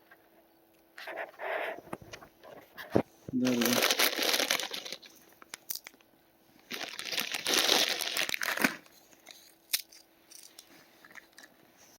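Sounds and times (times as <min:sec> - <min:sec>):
chip bag crinkling: 0:03.4 - 0:06.0, 0:06.7 - 0:10.6.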